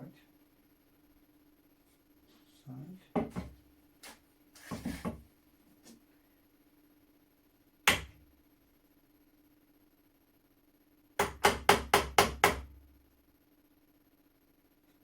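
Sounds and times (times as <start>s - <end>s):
tool knocking on metal pin: 11.2s - 12.7s.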